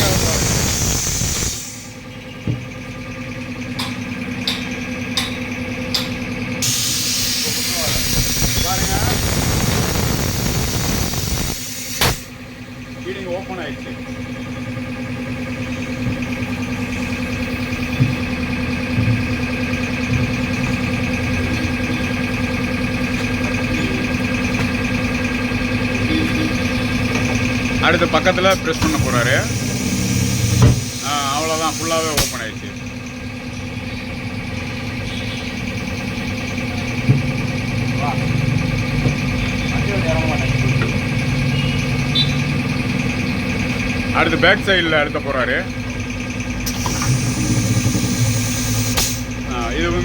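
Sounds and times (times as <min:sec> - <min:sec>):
air hiss: 0:00.0 - 0:02.0, 0:06.6 - 0:12.3, 0:28.8 - 0:32.4, 0:46.7 - 0:49.3
motor humming: 0:00.0 - 0:02.7, 0:06.6 - 0:12.4, 0:23.4 - 0:33.1, 0:46.0 - 0:49.4
machine hum: 0:00.0 - 0:44.2, 0:45.6 - 0:50.0
machine knock: 0:03.6 - 0:06.4
sharp machine clicks: 0:05.9 - 0:12.4, 0:45.6 - 0:49.8.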